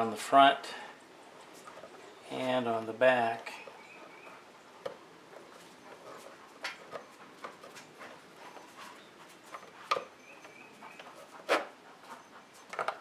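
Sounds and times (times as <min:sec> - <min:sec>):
plastic clicks and scrapes: 0:12.7 - 0:13.0.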